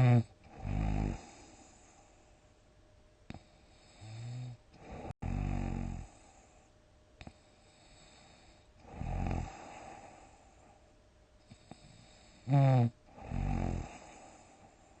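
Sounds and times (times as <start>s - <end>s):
person snoring heavily: 0.0s - 1.6s, 3.8s - 6.2s, 7.8s - 10.3s, 11.5s - 14.6s.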